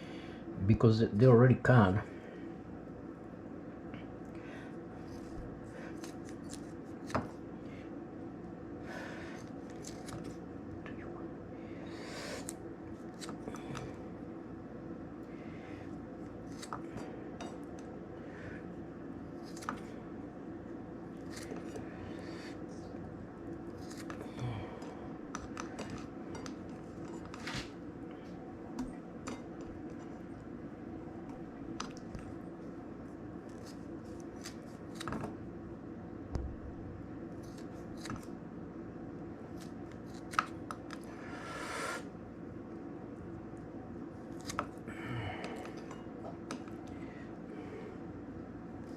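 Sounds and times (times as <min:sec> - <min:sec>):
background hum: 0:00.0 - 0:48.9
scissors snipping: 0:19.4 - 0:19.8.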